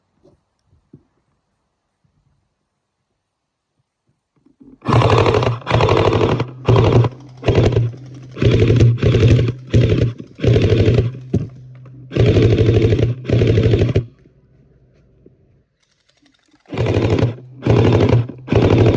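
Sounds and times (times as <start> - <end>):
motor and gearbox whine: 4.8 - 14.4, 15.9 - 18.9
toy blaster firing rapid bursts: 4.9 - 11.5, 12.1 - 14.1, 15.8 - 18.9.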